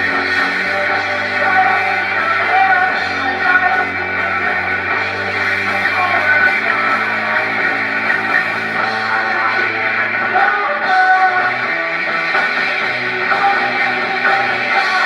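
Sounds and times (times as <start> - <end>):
live rock band playing: 0.0 - 15.0.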